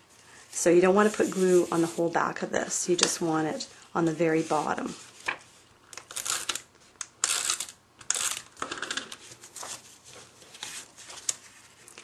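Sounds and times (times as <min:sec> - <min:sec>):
scratchy paper strokes: 0:00.6 - 0:02.1.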